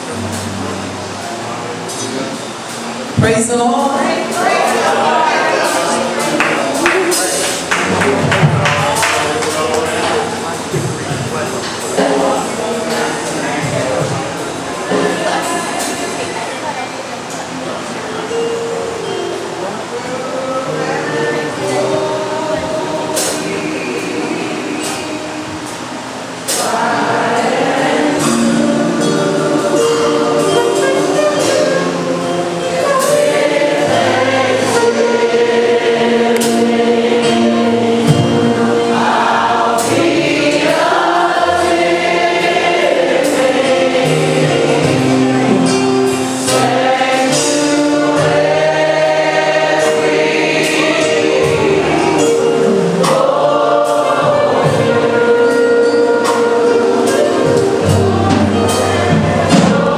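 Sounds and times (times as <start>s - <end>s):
church choir singing gospel: 0.0s - 59.9s
instrumental accompaniment: 0.0s - 59.9s.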